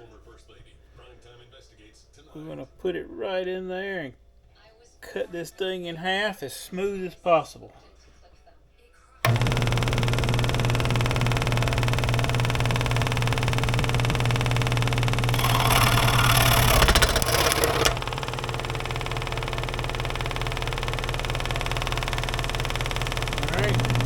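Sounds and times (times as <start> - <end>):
bandsaw motor running: 9.3 - 24.0.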